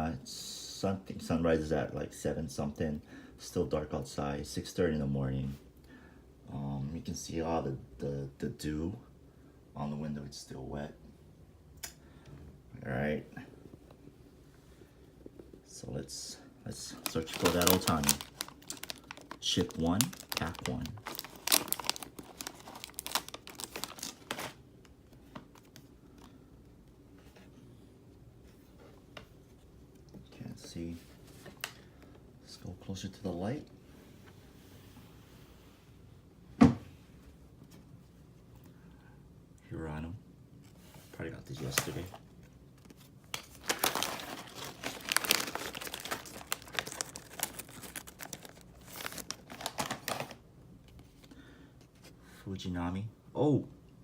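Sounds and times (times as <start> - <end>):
plastic wrappers crinkling and tearing: 16.7 - 26.3, 41.5 - 51.3.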